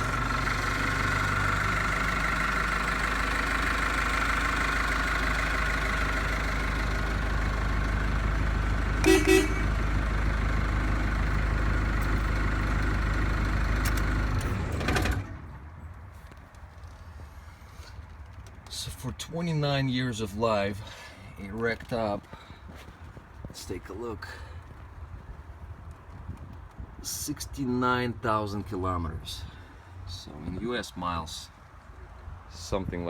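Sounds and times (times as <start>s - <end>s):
diesel engine idling: 0.0s - 15.8s
horn toots: 9.0s - 9.9s.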